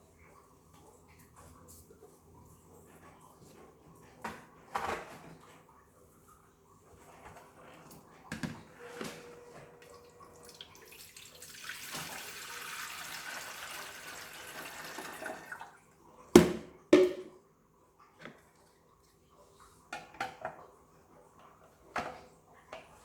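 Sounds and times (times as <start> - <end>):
water running into a tank: 9.8 - 16.2.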